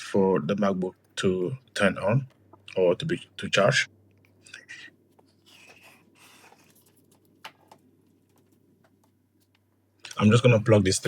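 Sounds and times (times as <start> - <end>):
faint rustling handling noise: 4.1 - 10.3.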